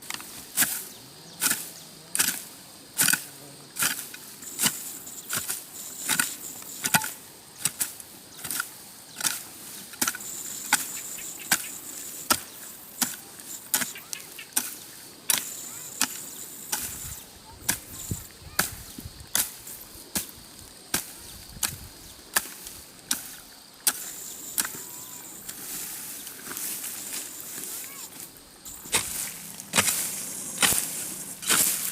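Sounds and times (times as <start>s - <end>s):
hoe chopping into grassy ground: 3.0s - 11.7s, 28.7s - 31.9s.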